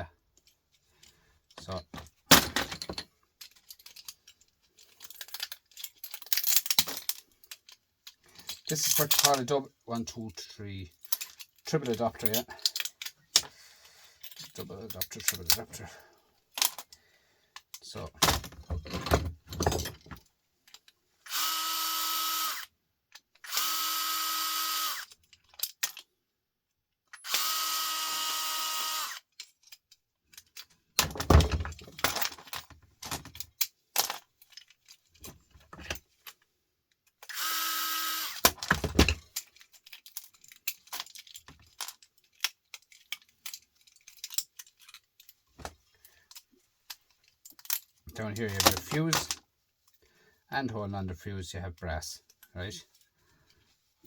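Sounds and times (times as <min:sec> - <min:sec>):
clicks and rattles of parts: 0:00.1 - 0:21.5, 0:22.6 - 0:23.7, 0:24.8 - 0:27.6, 0:28.4 - 0:50.2, 0:51.8 - 0:54.0
cordless drill running: 0:21.3 - 0:22.7, 0:23.5 - 0:25.1, 0:27.2 - 0:29.2, 0:37.3 - 0:38.4.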